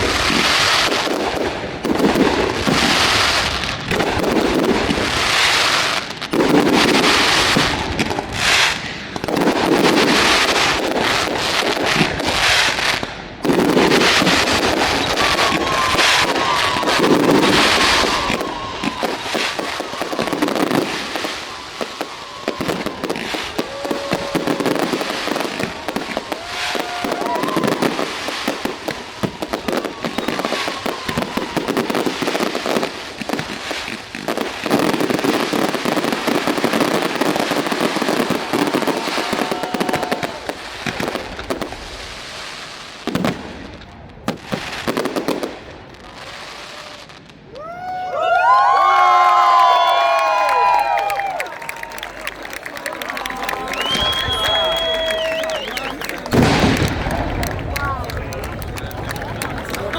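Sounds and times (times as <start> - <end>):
loud firework booms: 0.0 - 47.0, 53.8 - 59.9
fireworks crackling and banging: 0.0 - 59.9
firework whistles: 2.7 - 41.6, 53.6 - 57.5.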